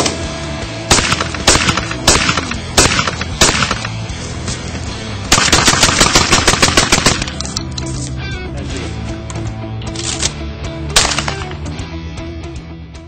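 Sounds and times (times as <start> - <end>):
shotgun shots: 0.9 - 4.1, 5.3 - 7.4, 11.0 - 11.7.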